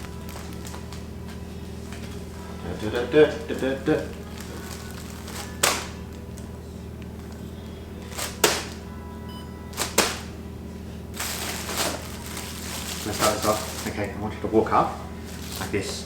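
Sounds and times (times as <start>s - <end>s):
background music: 0.0s - 16.0s.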